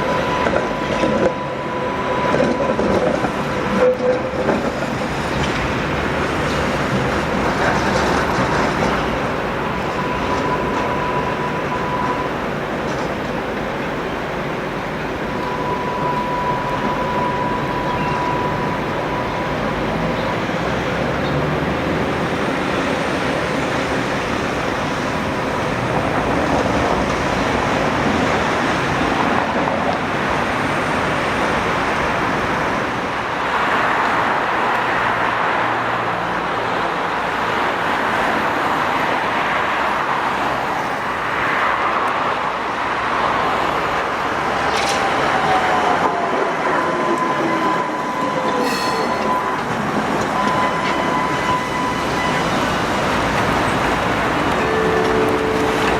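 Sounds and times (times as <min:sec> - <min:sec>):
street traffic: 0:00.0 - 0:55.9
tram rolling: 0:00.0 - 0:55.9
thin high tone: 0:47.0 - 0:52.8.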